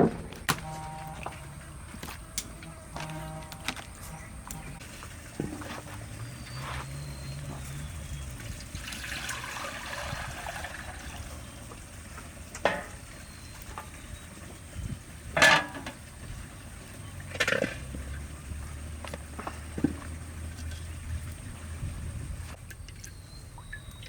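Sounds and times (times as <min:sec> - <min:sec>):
liquid pouring into pot: 0:08.3 - 0:12.9.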